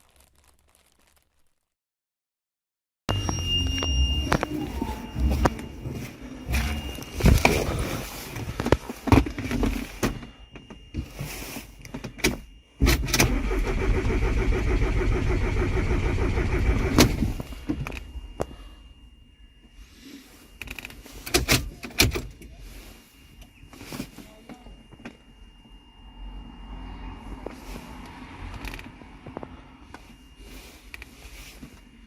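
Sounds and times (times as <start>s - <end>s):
engine cranking on starter: 12.8s - 17.5s.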